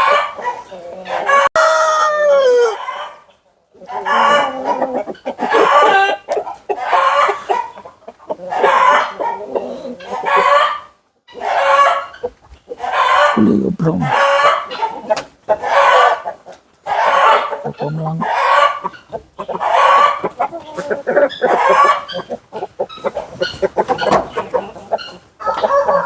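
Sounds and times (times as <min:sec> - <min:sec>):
roosters crowing: 0:00.0 - 0:03.2, 0:03.9 - 0:07.7, 0:23.2 - 0:26.0
chickens clucking: 0:00.0 - 0:26.0.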